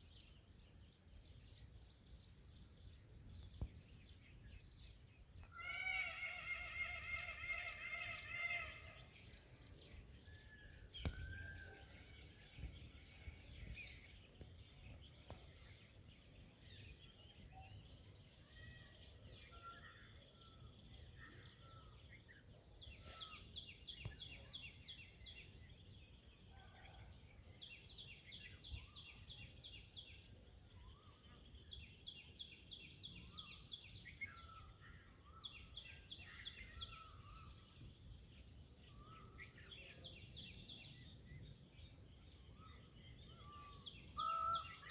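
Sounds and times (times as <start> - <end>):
high insect whine: 0.0 - 26.4, 27.6 - 44.9
small birds chirping and trilling: 0.0 - 44.9
evenly pitched bird call: 5.4 - 9.1.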